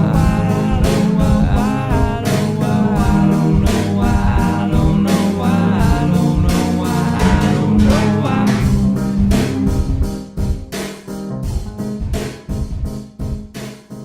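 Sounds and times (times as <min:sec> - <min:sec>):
hip-hop drum beat: 0:00.0 - 0:14.0
sung melody: 0:00.0 - 0:14.0.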